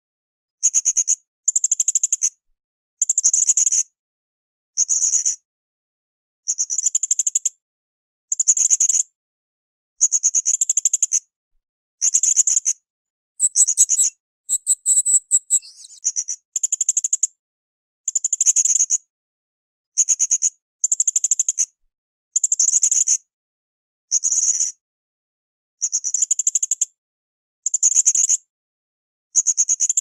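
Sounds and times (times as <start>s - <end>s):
parrot chirps: 13.4s - 16.0s
parrot trilled calls: 13.4s - 16.0s.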